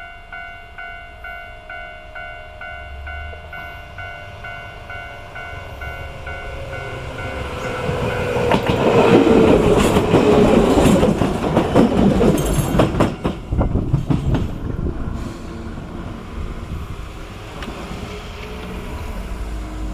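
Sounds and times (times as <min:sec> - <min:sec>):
crossing warning bell ringing: 0:00.0 - 0:14.6
electric train rushing past: 0:02.0 - 0:19.9
wheel clacks over rail joints: 0:07.4 - 0:14.6.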